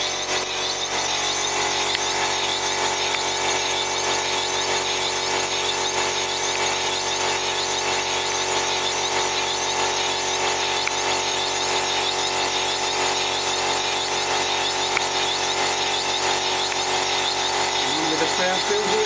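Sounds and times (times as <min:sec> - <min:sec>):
steam engine running on air: 0:00.0 - 0:19.0.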